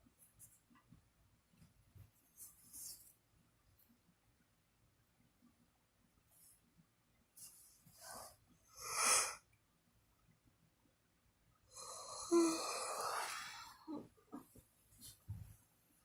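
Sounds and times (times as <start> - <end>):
person snoring: 11.7 - 14.0.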